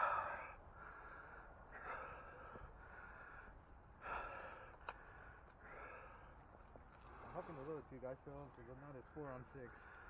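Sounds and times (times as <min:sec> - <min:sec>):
man breathing hard: 0:00.0 - 0:06.4.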